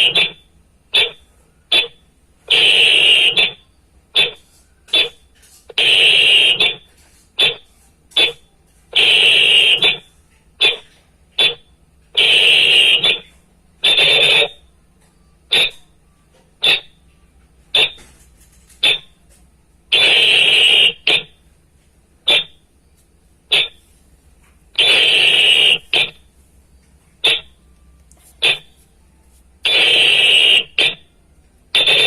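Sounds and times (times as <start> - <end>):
whistle blasts: 0.0 - 0.4, 1.0 - 3.6, 4.2 - 6.8, 9.0 - 10.8, 11.4 - 11.6, 12.2 - 14.6, 15.5 - 15.8, 17.8 - 18.0, 19.9 - 21.4, 22.3 - 22.6, 23.5 - 23.8, 24.8 - 26.2, 27.2 - 27.7, 28.4 - 28.8, 29.6 - 31.1, 31.8 - 32.0.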